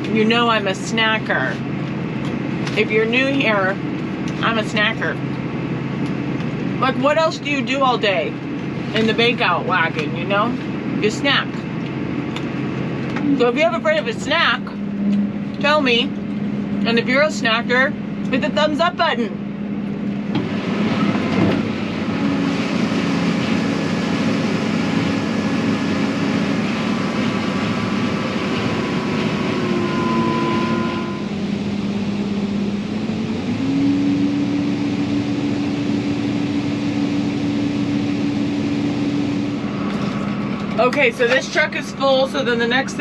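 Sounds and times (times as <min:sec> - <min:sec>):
rushing noise: 0:19.3 - 0:41.2.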